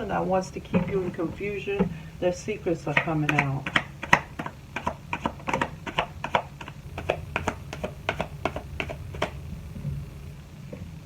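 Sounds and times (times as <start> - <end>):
steady low hum: 0.0 - 11.0
cards clicking and tapping on table: 3.0 - 9.4.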